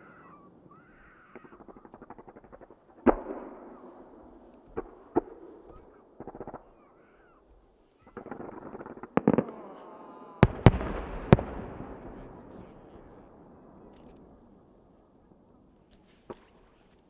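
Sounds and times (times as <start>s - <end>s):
firework bangs: 1.4s - 6.8s, 8.0s - 15.0s
firework crackling: 8.0s - 14.9s.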